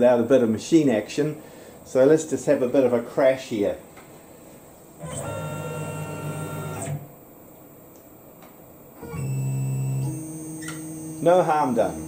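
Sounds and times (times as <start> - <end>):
machine motors whining: 5.0 - 7.1, 9.0 - 12.0.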